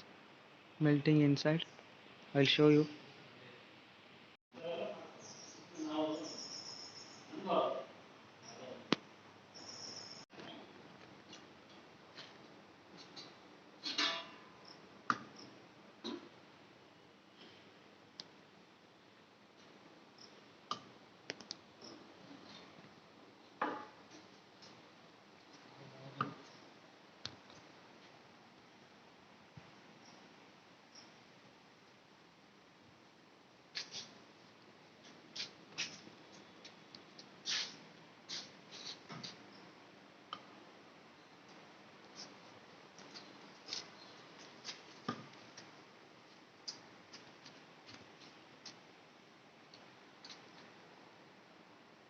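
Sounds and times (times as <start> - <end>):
sharp clicks and light knocks: 20.7 - 22.0.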